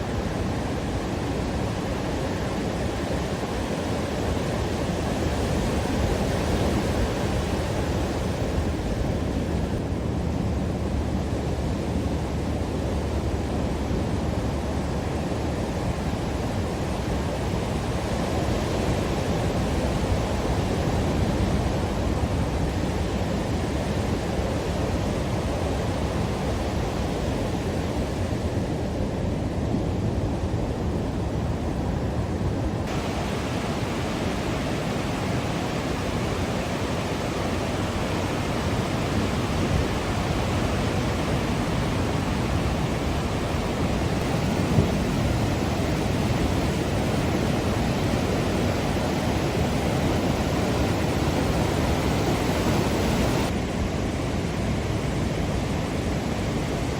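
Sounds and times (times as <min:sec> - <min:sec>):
ocean surf on beach: 0:00.0 - 0:56.9
wind on microphone: 0:13.6 - 0:56.9.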